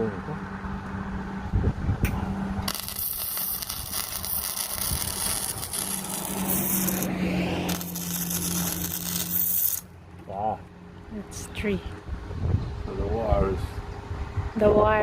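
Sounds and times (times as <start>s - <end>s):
steady low hum: 0.0s - 15.0s
welding arc crackling and hissing: 2.6s - 9.9s.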